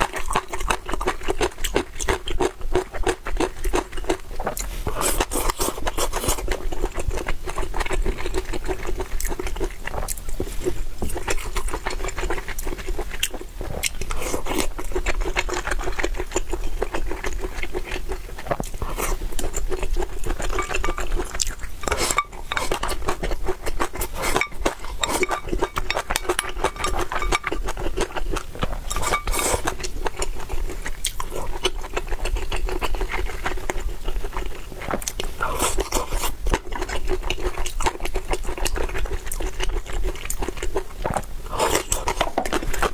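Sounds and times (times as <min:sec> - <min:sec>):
wet chewing and biting: 0:00.0 - 0:42.9
utensils scraping a bowl: 0:20.2 - 0:29.8.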